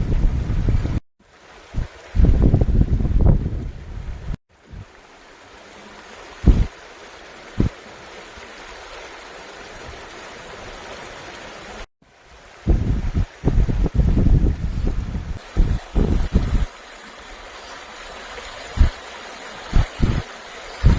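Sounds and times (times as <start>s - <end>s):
wind buffeting microphone: 0.0s - 1.0s, 1.7s - 4.9s, 6.4s - 6.7s, 12.5s - 16.8s, 18.5s - 19.0s, 19.7s - 20.9s
mountain stream rushing: 0.0s - 3.3s, 4.0s - 20.9s.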